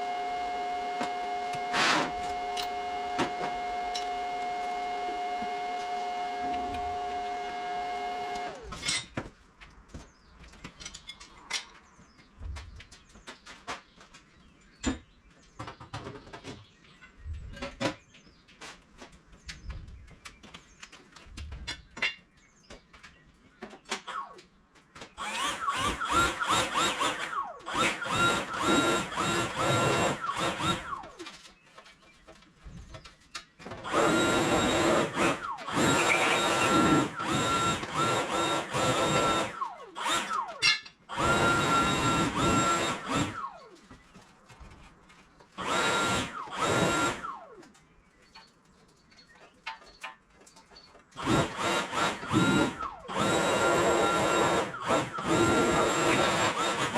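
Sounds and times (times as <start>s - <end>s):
strimmer revving: 0.0s - 8.7s, 25.2s - 31.1s, 33.8s - 43.7s, 45.6s - 47.5s, 51.2s - 56.9s.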